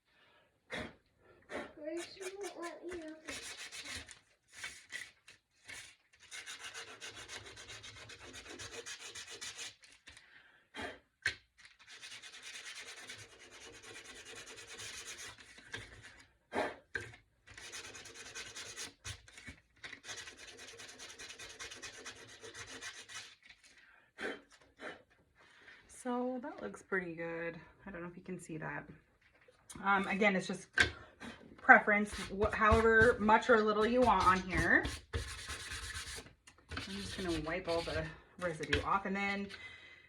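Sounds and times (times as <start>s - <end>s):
sandpaper scratching wood: 2.0s - 5.1s, 5.7s - 9.9s, 11.8s - 15.6s, 17.6s - 19.3s, 20.0s - 23.6s, 32.1s - 33.2s, 33.8s - 38.1s.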